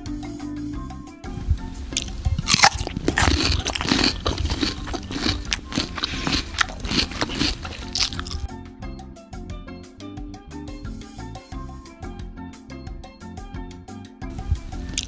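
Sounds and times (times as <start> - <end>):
background music: 0.0 - 15.0
sand crunching and crackling: 1.5 - 8.5.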